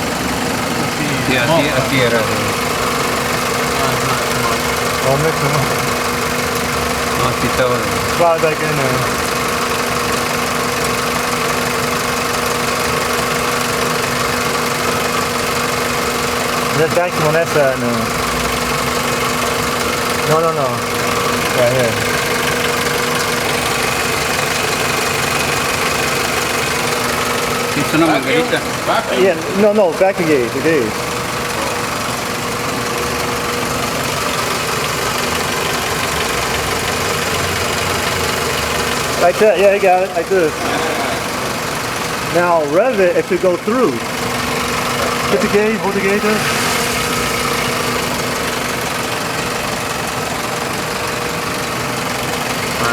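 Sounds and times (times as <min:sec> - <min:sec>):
car engine idling: 0:00.0 - 0:52.9.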